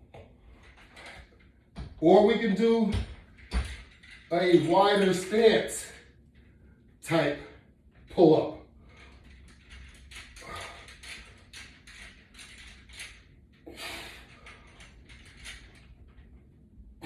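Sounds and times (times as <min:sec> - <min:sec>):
person breathing hard: 0:10.3 - 0:11.5, 0:13.6 - 0:14.9.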